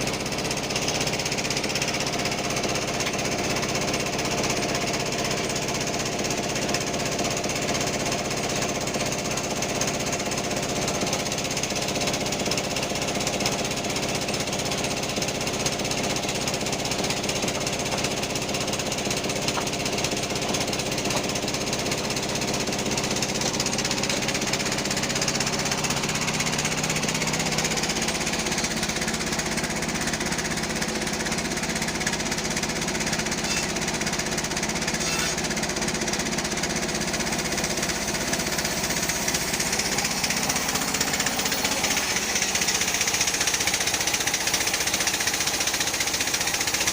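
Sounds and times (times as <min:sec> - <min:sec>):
bandsaw cutting wood: 0:12.0 - 0:30.2, 0:32.4 - 0:36.2, 0:37.2 - 0:46.9.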